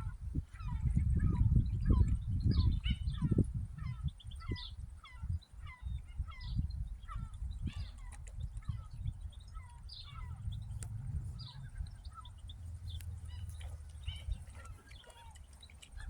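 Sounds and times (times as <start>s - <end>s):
birds squawking and chirping: 0.0s - 16.0s
low uneven rumble: 8.6s - 16.0s.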